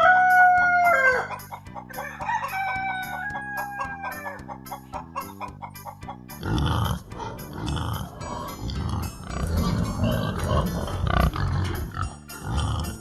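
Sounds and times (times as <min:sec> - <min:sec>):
pigs grunting: 0:06.3 - 0:13.0.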